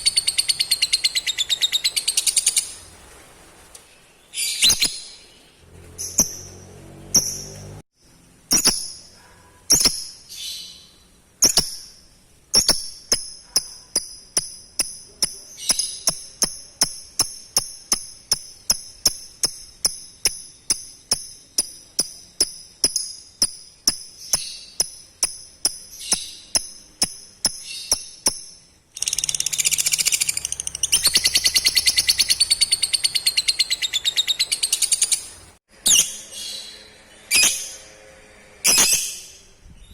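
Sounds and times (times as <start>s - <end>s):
lovebird calls: 0.0s - 2.8s, 29.0s - 37.8s
lovebird chirping chatter: 0.0s - 2.8s, 8.5s - 37.8s.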